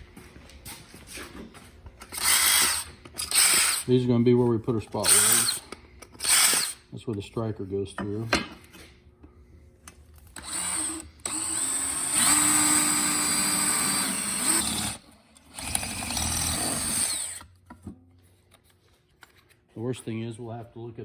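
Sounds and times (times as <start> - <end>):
electric drill drilling metal: 2.1 - 3.9, 5.0 - 6.8, 10.4 - 17.5.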